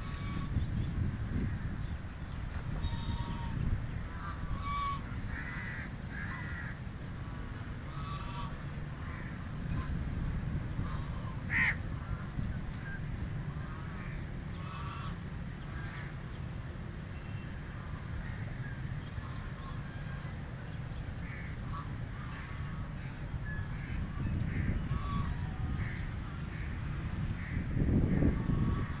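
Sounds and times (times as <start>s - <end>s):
ducks quacking: 7.9s - 9.3s, 13.7s - 15.2s, 23.8s - 26.8s
steady low rumble: 19.6s - 29.0s.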